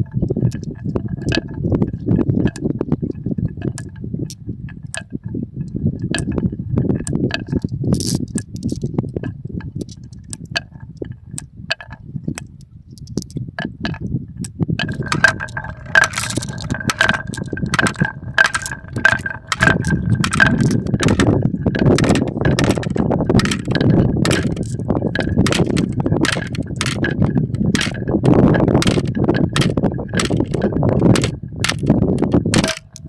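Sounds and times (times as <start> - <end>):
marbles rolling on wooden track: 0.1 - 4.0, 6.0 - 10.8, 14.8 - 33.0
marbles clacking on track: 0.4 - 4.0, 6.0 - 10.8, 14.8 - 33.0.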